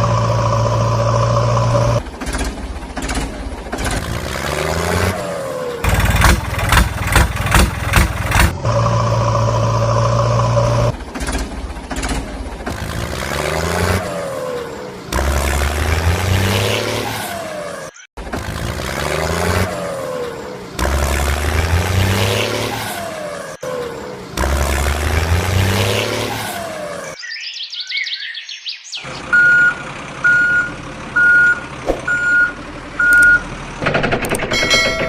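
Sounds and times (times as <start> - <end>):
truck engine with falling whine: 0.0 - 27.2, 29.0 - 35.0
reversing beeps: 29.3 - 33.5.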